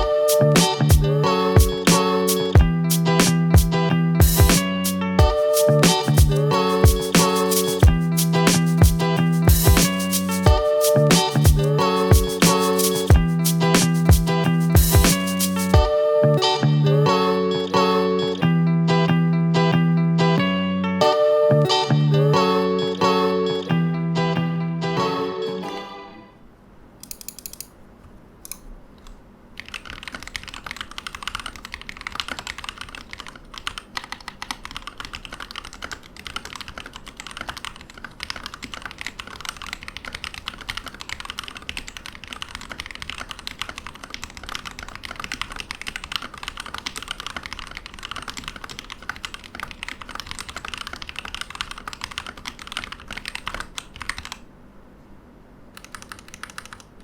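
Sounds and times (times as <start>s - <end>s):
mechanical keyboard typing: 4.4s - 15.8s, 29.6s - 54.4s, 55.8s - 57.0s.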